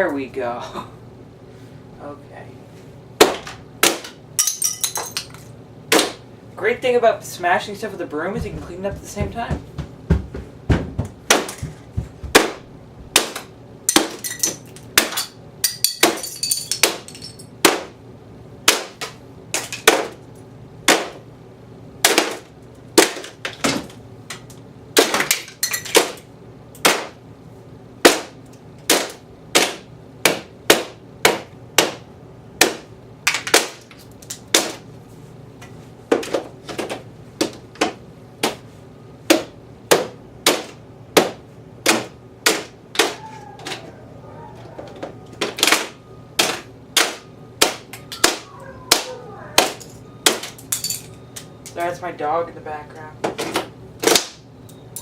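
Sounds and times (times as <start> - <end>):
rattle of breaking pieces: 13.9 - 17.5.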